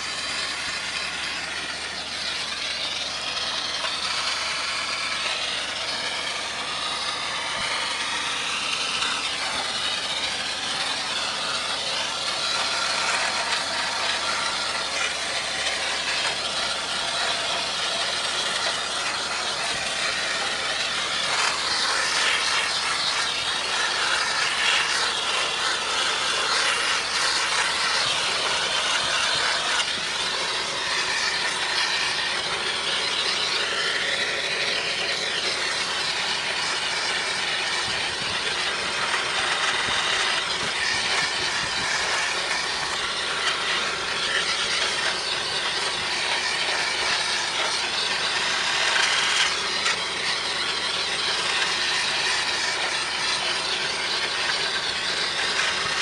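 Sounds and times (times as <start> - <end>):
machine whirring and hissing: 0.0 - 56.0.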